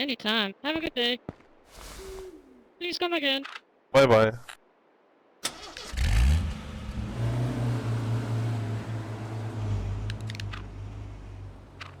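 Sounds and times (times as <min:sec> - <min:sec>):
car engine idling: 0:05.5 - 0:12.0
light clicks: 0:10.0 - 0:10.8.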